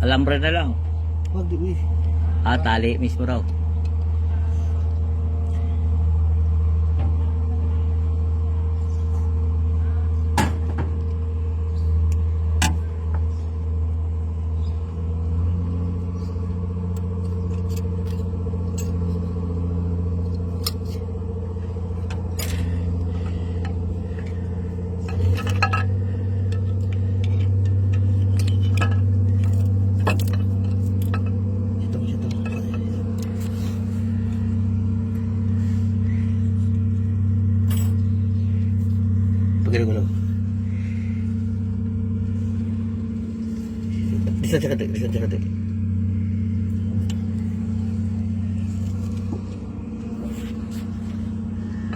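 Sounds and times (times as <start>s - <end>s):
engine running with low drone: 0.0s - 51.9s.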